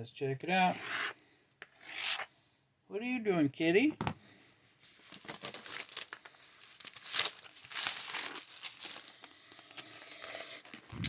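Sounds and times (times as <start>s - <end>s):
packaging crinkling: 4.9s - 9.7s.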